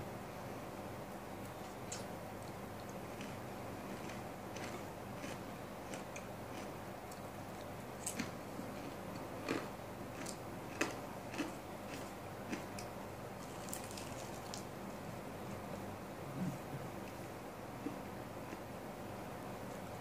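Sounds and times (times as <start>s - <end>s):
chewing and mouth sounds: 1.7s - 14.6s.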